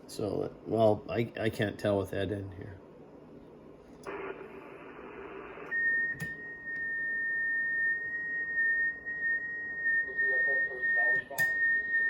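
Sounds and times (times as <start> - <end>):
radio receiver hiss: 4.0 - 8.3, 9.9 - 12.0.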